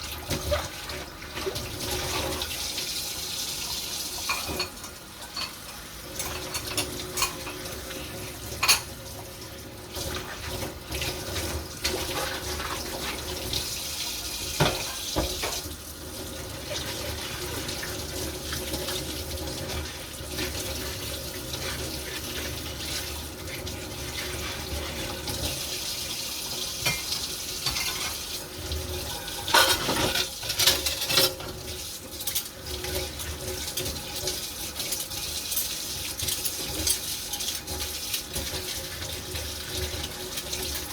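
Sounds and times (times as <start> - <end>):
tap water running into sink: 0.0 - 40.9
dishes and pans clinking: 4.2 - 8.0, 8.6 - 9.0, 14.4 - 15.7, 26.8 - 28.4, 29.0 - 38.8.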